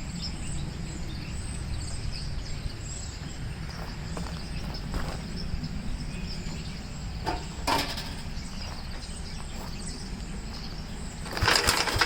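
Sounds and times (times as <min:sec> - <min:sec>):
crickets chirping: 0:00.0 - 0:12.0
engine cranking without firing: 0:11.0 - 0:12.0.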